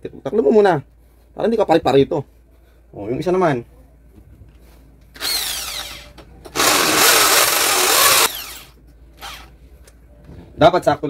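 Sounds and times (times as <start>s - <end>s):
electric drill boring into wall: 5.2s - 9.5s.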